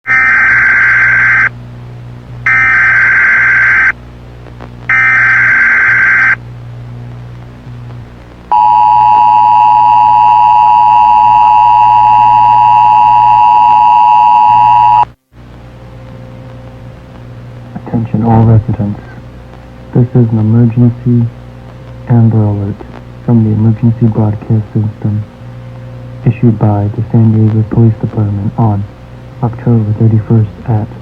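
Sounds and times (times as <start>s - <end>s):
low hum: 0.1s - 31.0s
screeching digital data bursts: 2.5s - 4.0s, 4.9s - 6.4s
two-tone attention signal beep: 8.5s - 15.1s.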